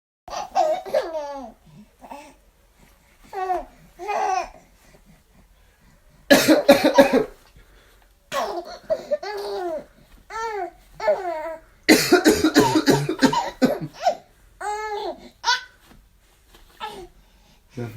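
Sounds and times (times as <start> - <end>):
baby laughing and squealing: 0.3 - 1.6, 8.4 - 11.6
man coughing loudly: 6.3 - 7.4, 11.9 - 14.2.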